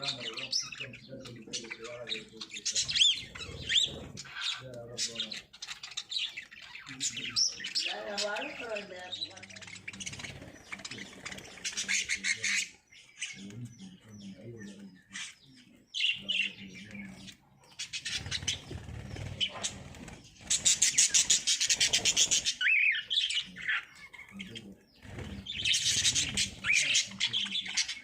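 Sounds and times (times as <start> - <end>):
lovebirds chattering and squawking: 0.0 - 28.0.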